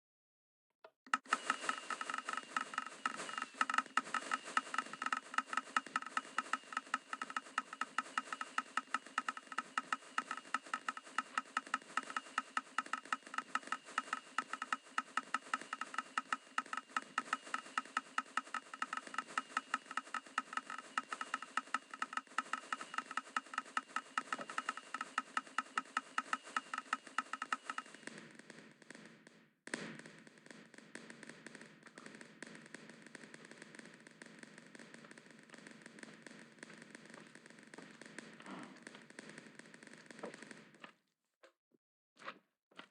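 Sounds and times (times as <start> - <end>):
firework cake popping: 29.7 - 41.0.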